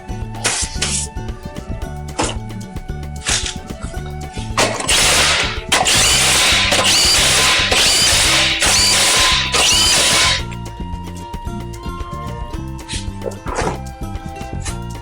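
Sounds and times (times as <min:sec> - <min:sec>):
background music with bass line: 0:00.0 - 0:15.0
power tool bursts: 0:04.8 - 0:10.5.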